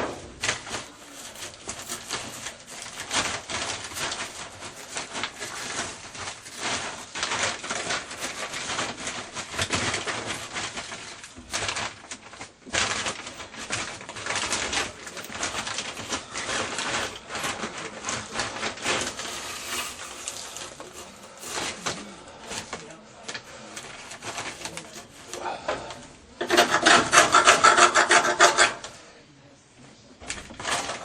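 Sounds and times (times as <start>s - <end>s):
tool scraping rust off metal: 0.0s - 6.8s, 18.5s - 22.7s, 23.4s - 28.9s.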